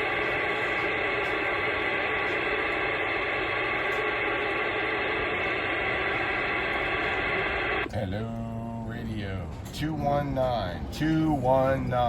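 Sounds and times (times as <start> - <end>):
radio static hiss: 0.0 - 7.9.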